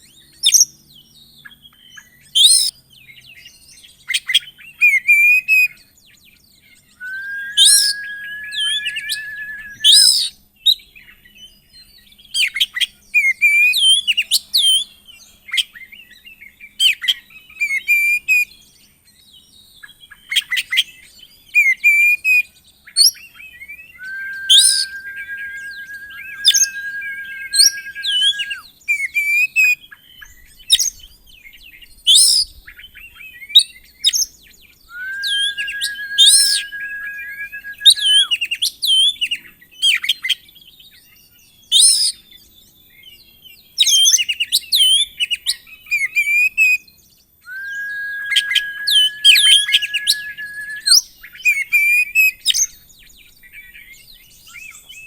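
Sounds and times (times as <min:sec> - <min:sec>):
bird singing whistled phrases: 0:07.0 - 0:10.3, 0:23.9 - 0:28.7, 0:34.9 - 0:38.4, 0:47.5 - 0:51.6
long steady whistled bird note: 0:07.0 - 0:10.3, 0:23.9 - 0:28.7, 0:34.9 - 0:38.4, 0:47.4 - 0:51.0.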